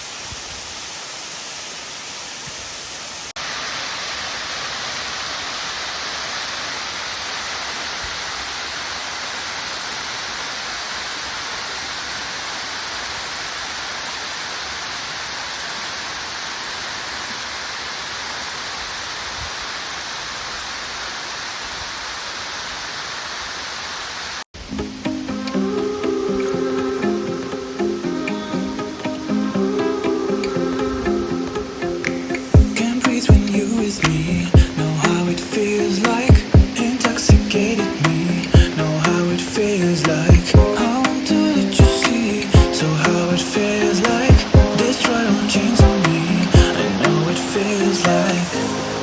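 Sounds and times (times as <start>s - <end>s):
waterfall pouring: 31.6s - 49.0s.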